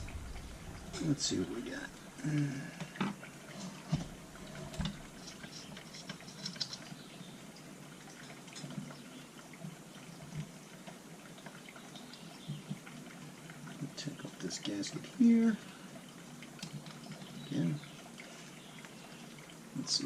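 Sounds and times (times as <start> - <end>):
small parts clicking and tapping: 4.7 - 7.0.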